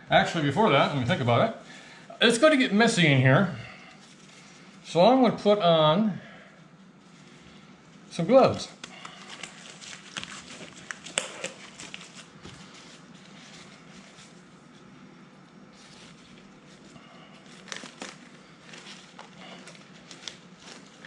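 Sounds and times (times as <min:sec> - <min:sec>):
disposable gloves crinkling: 0:03.8 - 0:04.9, 0:06.8 - 0:21.0.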